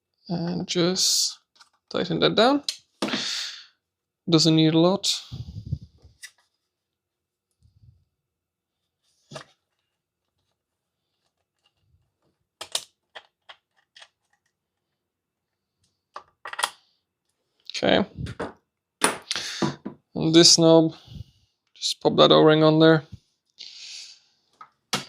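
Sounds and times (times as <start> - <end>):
tools and plastic parts clicking: 12.6 - 14.9, 16.1 - 16.8.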